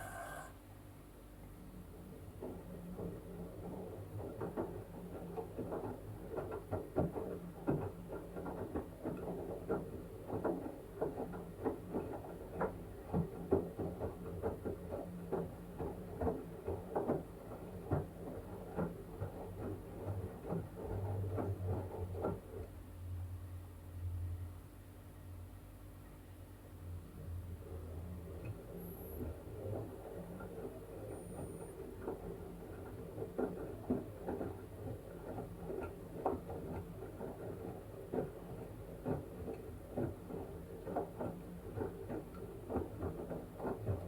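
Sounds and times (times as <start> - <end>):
washing machine motor hum: 0.0 - 0.5, 26.7 - 44.0.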